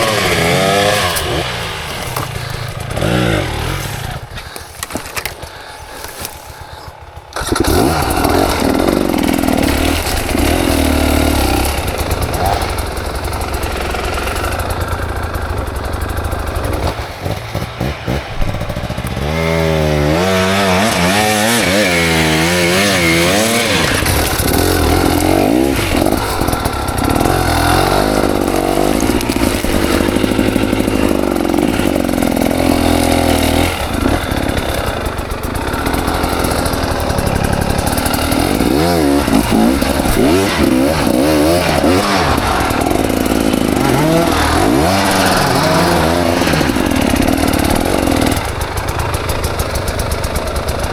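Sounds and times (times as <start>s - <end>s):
two-stroke engine revving: 0.0s - 50.9s.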